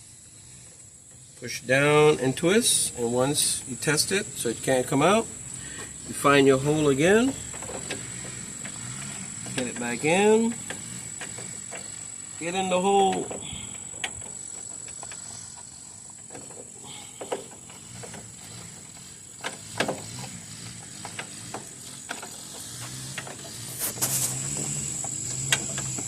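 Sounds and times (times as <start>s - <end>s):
small plastic clicks and scrapes: 13.1s - 26.0s.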